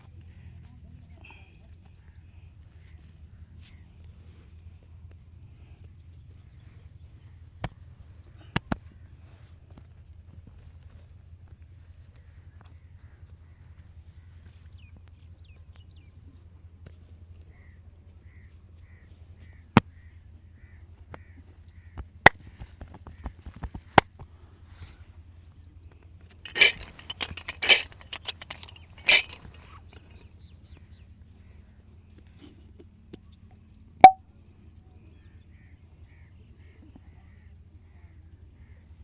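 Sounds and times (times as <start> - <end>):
joint cracking: 26.5 - 30.1.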